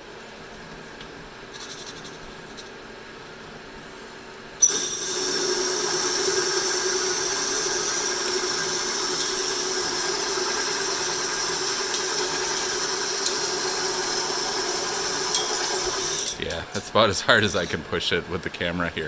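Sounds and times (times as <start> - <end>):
lathe cutting metal: 4.6 - 16.4.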